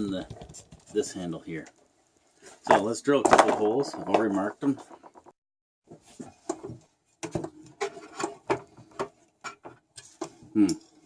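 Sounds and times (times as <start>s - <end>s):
scraping and handling knocks: 2.5s - 5.3s, 5.9s - 10.4s.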